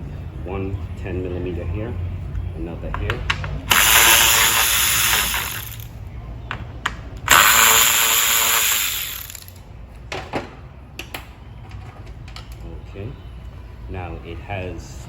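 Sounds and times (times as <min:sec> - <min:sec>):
power tool spinning out bolts: 0:03.7 - 0:05.9, 0:07.3 - 0:09.6.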